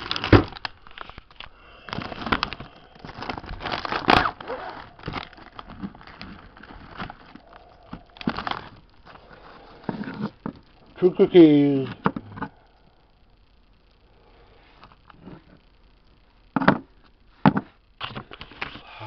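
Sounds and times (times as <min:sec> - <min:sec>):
plastic wrapper crinkling: 0:00.0 - 0:12.5.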